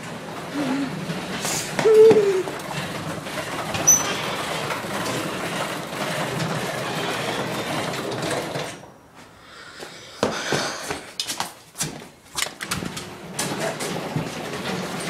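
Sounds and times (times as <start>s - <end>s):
garage door opener rattling: 0.0s - 9.0s, 12.4s - 15.0s.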